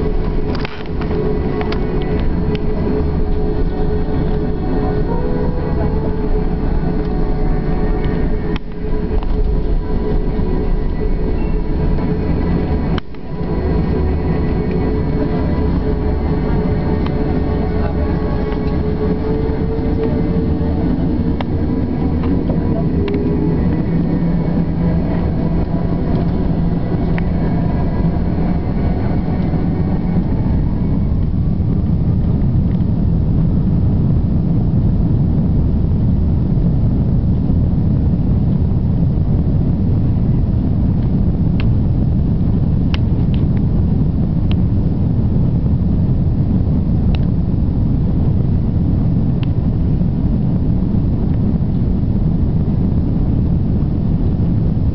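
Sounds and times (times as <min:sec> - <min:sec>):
jet engines whining: 0:00.0 - 0:37.6
steady loud engine rumble: 0:00.0 - 0:54.9.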